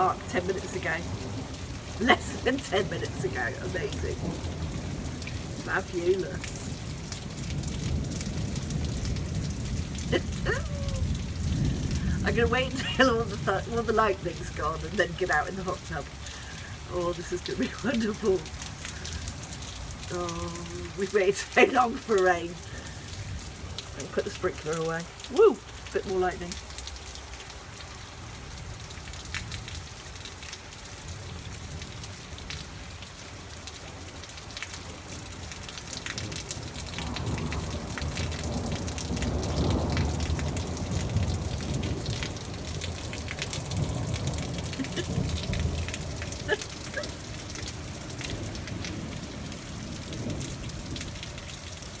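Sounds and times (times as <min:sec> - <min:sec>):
thunder rumbling: 0:00.0 - 0:25.9, 0:36.2 - 0:51.4
rain pattering: 0:00.0 - 0:52.0.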